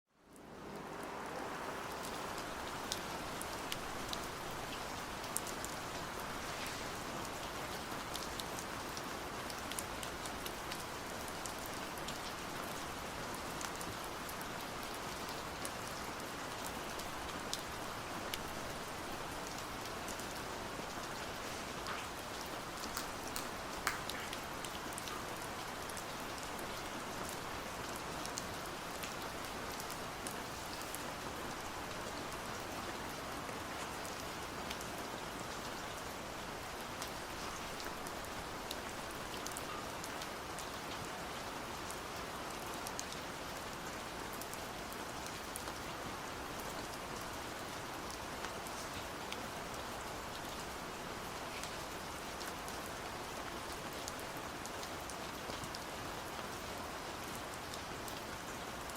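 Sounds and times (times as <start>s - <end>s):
steady rain falling: 0.1s - 58.9s
raindrops tapping sharply: 22.8s - 24.4s.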